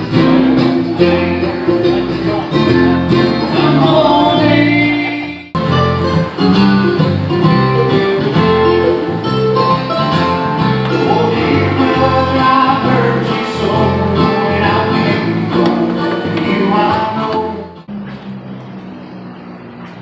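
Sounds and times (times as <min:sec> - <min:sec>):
person singing: 0:00.0 - 0:05.6, 0:10.9 - 0:17.8
plucked guitar: 0:00.0 - 0:17.9
steady bass line: 0:00.0 - 0:20.0.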